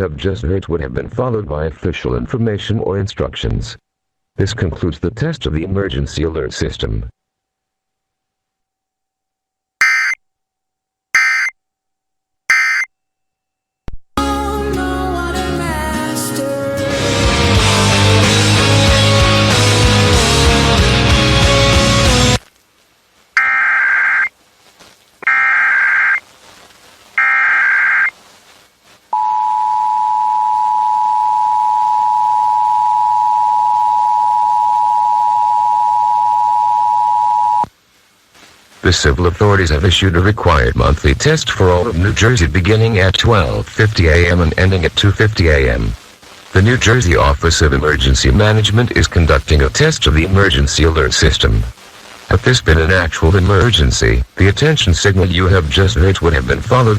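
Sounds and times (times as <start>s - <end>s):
digital data tone bursts: 9.8s - 10.2s, 11.2s - 11.5s, 12.5s - 12.9s, 23.4s - 24.3s, 25.2s - 26.2s, 27.2s - 28.1s
two-tone attention signal: 9.8s - 10.2s, 11.2s - 11.5s, 12.5s - 12.9s.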